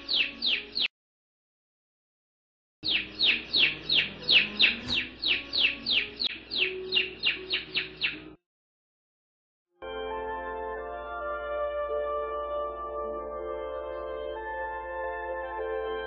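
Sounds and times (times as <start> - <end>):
canary chirping: 0.0 - 0.9, 2.8 - 8.4.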